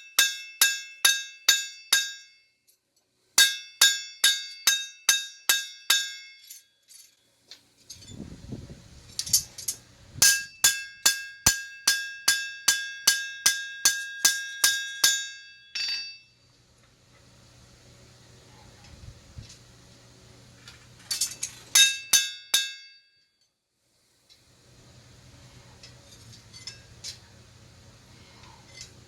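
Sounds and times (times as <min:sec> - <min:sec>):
hammer clanging on steel: 0:03.4 - 0:06.7, 0:09.4 - 0:16.3, 0:21.1 - 0:23.0.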